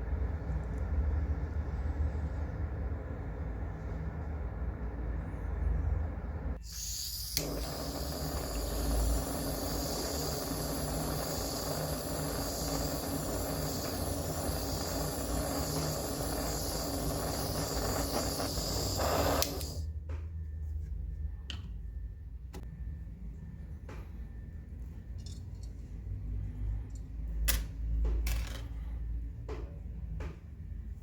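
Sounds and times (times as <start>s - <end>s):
small machine humming and hissing: 6.5s - 19.9s.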